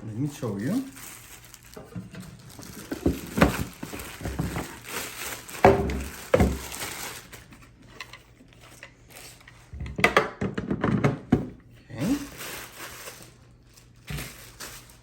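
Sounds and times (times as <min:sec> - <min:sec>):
plastic rustling: 0:00.0 - 0:09.7, 0:12.0 - 0:15.0
plastic parts knocking: 0:01.8 - 0:04.8, 0:05.6 - 0:06.8, 0:09.8 - 0:11.6.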